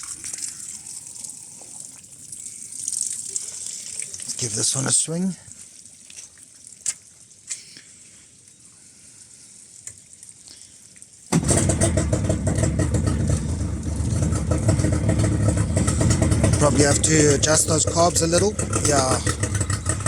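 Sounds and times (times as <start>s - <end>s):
outboard motor running: 11.3s - 20.0s.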